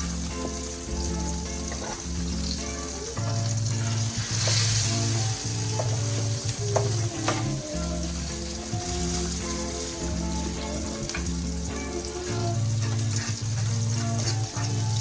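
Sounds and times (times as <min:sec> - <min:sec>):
background music with bass: 0:00.0 - 0:15.0
food sizzling in a frying pan: 0:00.0 - 0:15.0
utensil clicking against pan: 0:10.6 - 0:15.0.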